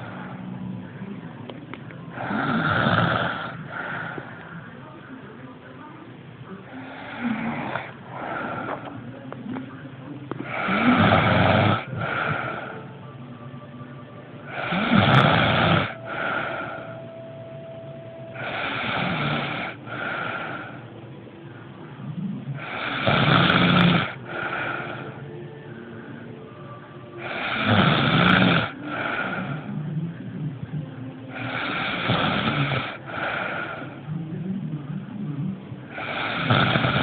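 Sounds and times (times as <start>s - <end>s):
person snoring loudly: 2.1s - 4.3s, 6.8s - 8.8s, 10.4s - 12.8s, 14.5s - 17.0s, 18.3s - 20.8s, 22.5s - 25.2s, 27.2s - 30.0s, 31.3s - 34.2s, 35.9s - 37.0s.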